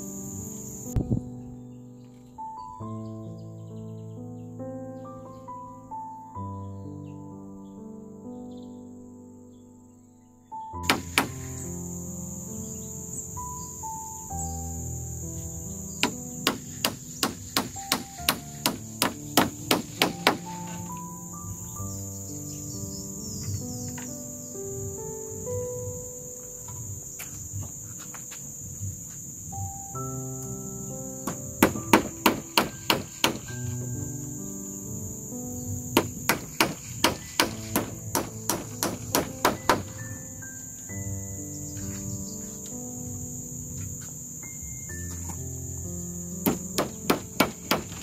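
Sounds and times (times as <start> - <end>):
crickets shrilling: 0.0 - 4.0, 10.5 - 48.0
background music: 0.0 - 48.0
hammer blows: 10.8 - 11.5.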